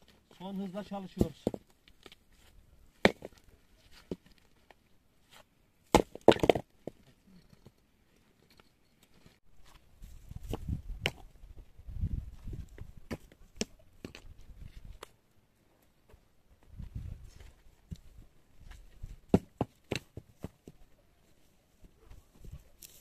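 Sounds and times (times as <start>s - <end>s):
stones scraping and shuffling: 0.0s - 15.1s
stones knocking together: 1.1s - 2.2s, 3.0s - 3.4s, 5.9s - 7.8s.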